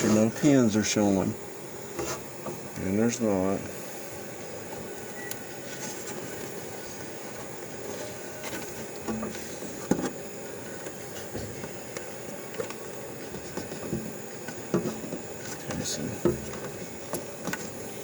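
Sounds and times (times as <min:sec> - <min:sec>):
steady background hiss: 0:00.0 - 0:18.0
small handling clicks and rubs: 0:05.3 - 0:17.8.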